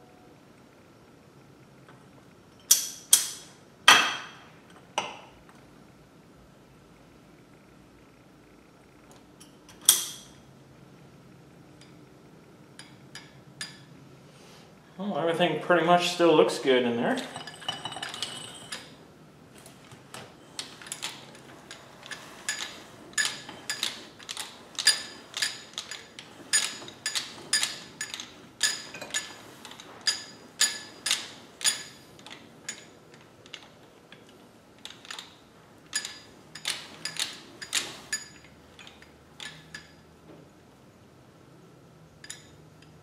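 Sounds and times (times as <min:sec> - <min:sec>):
sharp metallic clinks and taps: 0:20.6 - 0:35.3, 0:35.9 - 0:40.0, 0:42.2 - 0:43.0.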